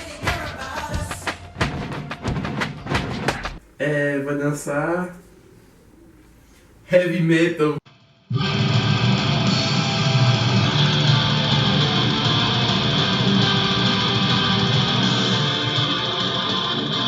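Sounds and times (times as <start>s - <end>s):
heavy metal with electric guitar: 8.3s - 17.0s.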